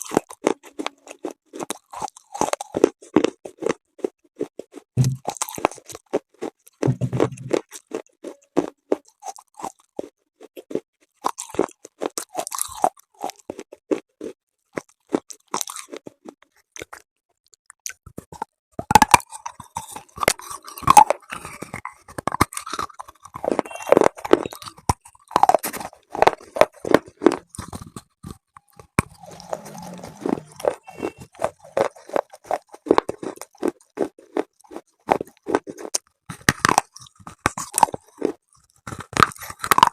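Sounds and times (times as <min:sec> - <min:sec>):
crunching chalky pieces: 0:17.9 - 0:39.9.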